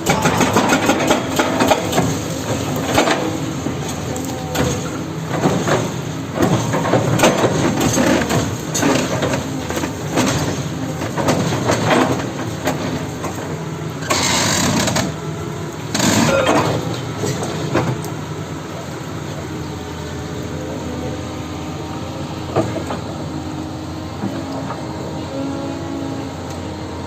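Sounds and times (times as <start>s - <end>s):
knocks and clanks: 0.0s - 15.2s
excavator engine running: 0.0s - 27.0s.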